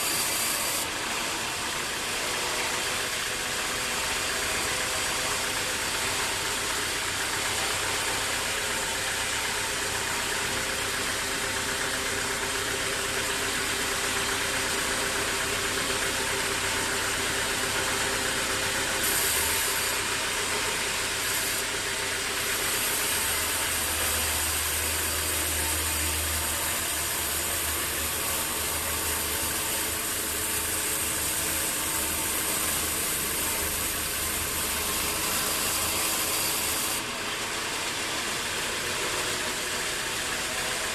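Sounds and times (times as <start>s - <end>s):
engine running: 0.0s - 40.9s.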